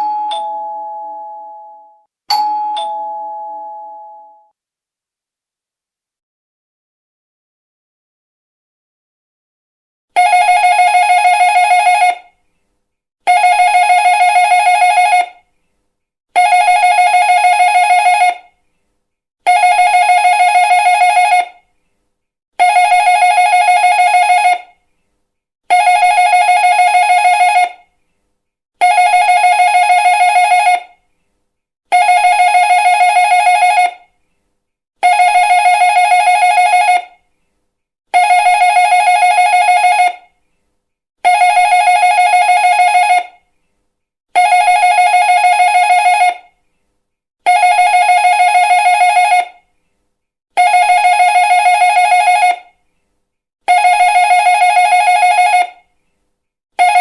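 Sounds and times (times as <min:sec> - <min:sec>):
electric doorbell ringing: 0:00.0 - 0:04.5.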